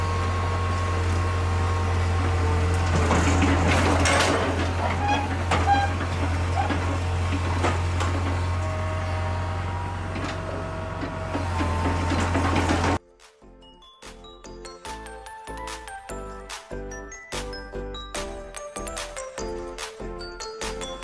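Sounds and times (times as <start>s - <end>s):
diesel excavator engine droning: 0.0s - 13.0s
metallic clanks: 0.0s - 13.0s
short squeals: 1.9s - 13.0s.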